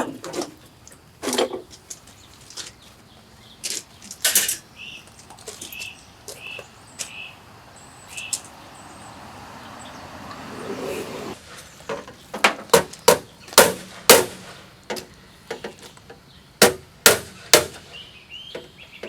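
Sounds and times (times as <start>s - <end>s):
loud strikes on metal: 12.8s - 14.5s, 16.6s - 17.9s.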